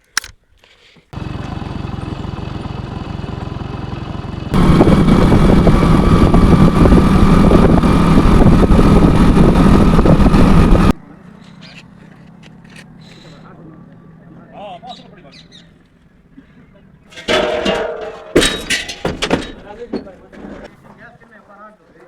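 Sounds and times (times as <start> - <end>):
motor running: 1.2 - 10.9.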